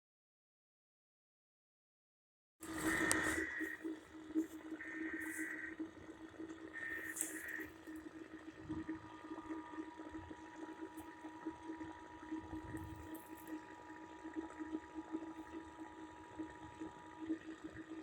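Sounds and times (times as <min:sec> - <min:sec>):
radio receiver hum and hiss: 0:02.6 - 0:15.5.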